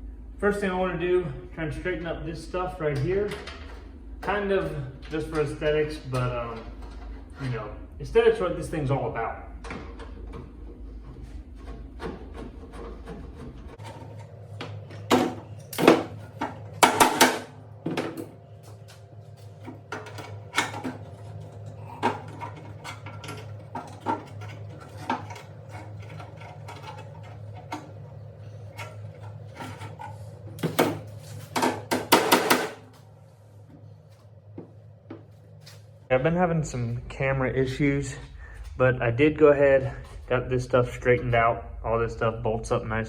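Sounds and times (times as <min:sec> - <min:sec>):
steady low hum: 0:00.0 - 0:43.0
metal knocks and clanks: 0:09.6 - 0:18.3.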